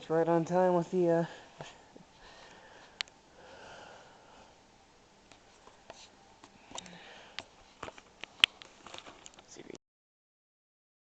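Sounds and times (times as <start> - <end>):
faint sharp clicks: 3.0 - 3.2.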